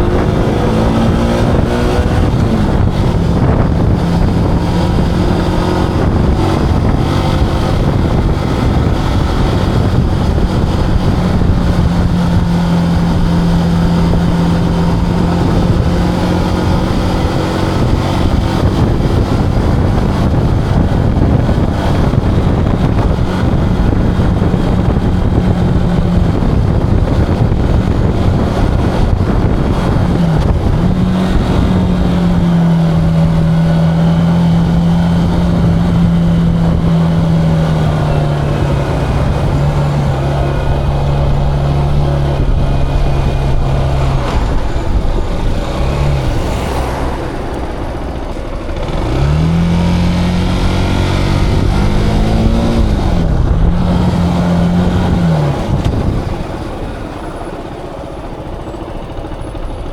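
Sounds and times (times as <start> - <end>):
motorcycle engine running: 0.0 - 59.9
wind rumble on microphone: 0.0 - 59.9.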